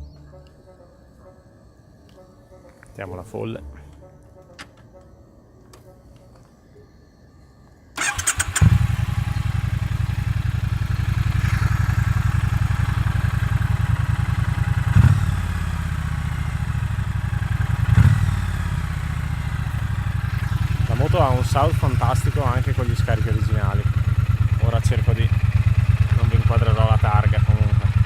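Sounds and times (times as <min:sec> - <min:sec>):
motorcycle starter cranking: 0:08.0 - 0:15.0, 0:19.8 - 0:28.0
engine revving: 0:08.0 - 0:28.0
motorcycle engine idling: 0:08.0 - 0:28.0.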